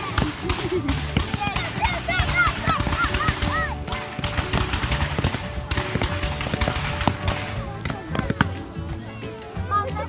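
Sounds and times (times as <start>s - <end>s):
fireworks crackling and popping: 0.0s - 8.8s
music with low bass: 0.0s - 10.0s.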